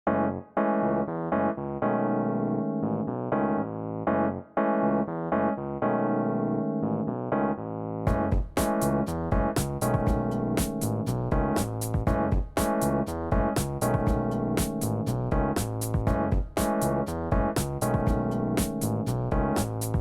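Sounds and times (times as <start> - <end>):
electric piano melody: 0.1 - 20.0
drum beat: 8.1 - 20.0.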